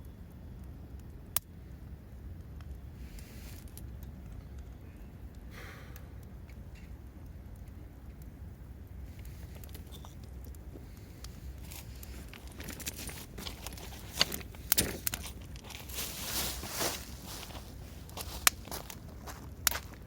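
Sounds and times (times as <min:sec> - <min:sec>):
low steady rumble: 0:00.0 - 0:20.0
crunching and crinkling: 0:09.1 - 0:20.0.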